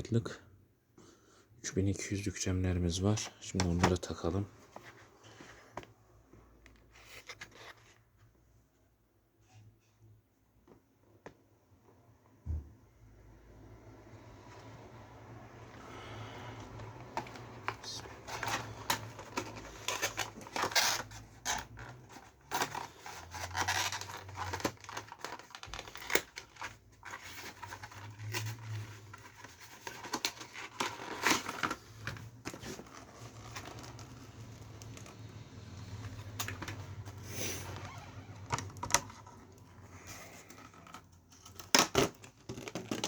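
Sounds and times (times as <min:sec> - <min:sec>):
plastic packaging crinkling: 0:17.2 - 0:39.8.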